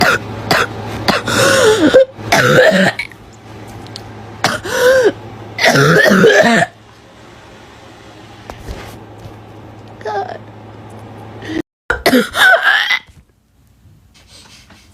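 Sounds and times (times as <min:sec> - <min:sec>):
girl coughing: 0:00.0 - 0:03.1, 0:04.4 - 0:06.8, 0:11.9 - 0:13.1.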